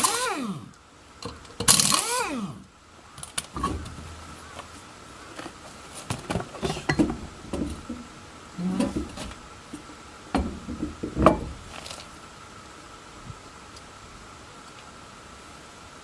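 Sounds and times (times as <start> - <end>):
metallic clanks and knocks: 3.2 - 12.2.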